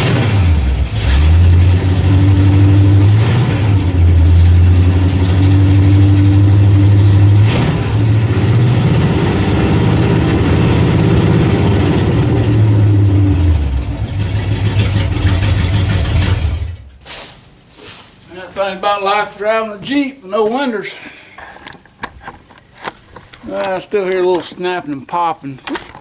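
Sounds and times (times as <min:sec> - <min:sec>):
pickup engine running: 0:00.0 - 0:17.0.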